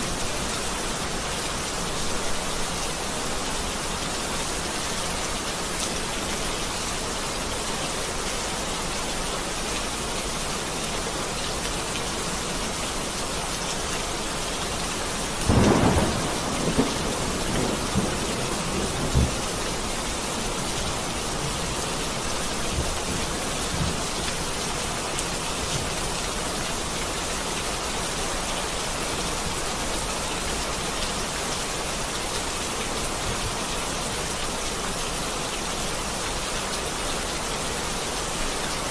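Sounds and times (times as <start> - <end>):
steady rain hiss: 0.0 - 38.9
thunderclap: 15.5 - 19.5
deep thunder rumbles: 15.5 - 19.6.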